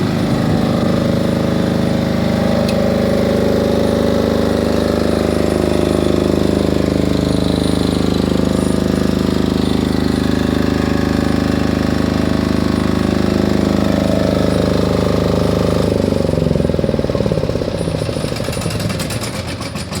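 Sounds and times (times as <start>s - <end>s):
generator winding down: 0.0s - 19.4s
diesel generator running: 0.0s - 20.0s.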